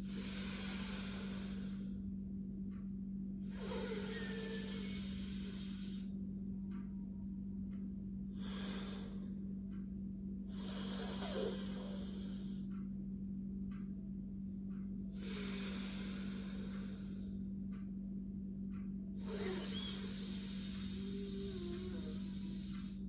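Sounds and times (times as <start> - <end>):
slow nasal breathing: 0.0 - 2.0, 3.5 - 6.2, 8.3 - 9.8, 10.5 - 12.8, 15.1 - 17.8, 19.2 - 23.0
steady low hum: 0.0 - 23.0.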